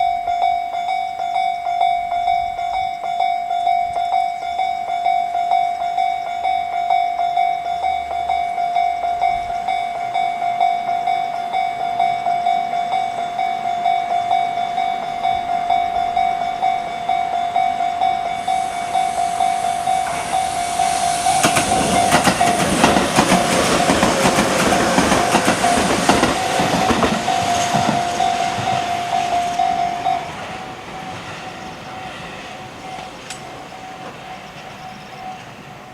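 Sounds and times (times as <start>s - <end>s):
level crossing warning bell: 0.0s - 35.9s
train wheels clattering over rails: 9.1s - 35.9s.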